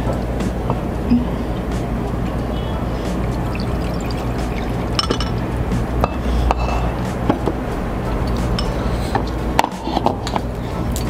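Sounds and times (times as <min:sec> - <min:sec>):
steady low hum: 0:00.0 - 0:09.6
soup sloshing in a bowl: 0:02.8 - 0:06.2
spoon clinking tableware: 0:03.2 - 0:05.5.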